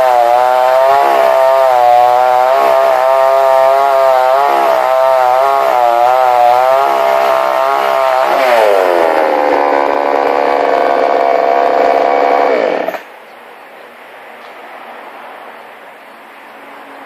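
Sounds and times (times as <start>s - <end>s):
chainsaw engine revving and idling: 0.0s - 13.1s.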